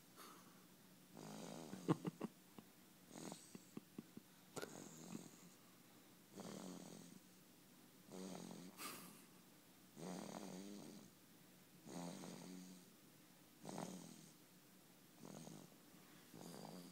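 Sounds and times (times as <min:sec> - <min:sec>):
baby snoring softly: 0:01.2 - 0:02.0, 0:03.1 - 0:03.7, 0:04.6 - 0:05.6, 0:06.3 - 0:07.2, 0:08.1 - 0:09.1, 0:10.0 - 0:11.1, 0:11.8 - 0:12.9, 0:13.6 - 0:14.4, 0:15.2 - 0:15.7, 0:16.3 - 0:16.9.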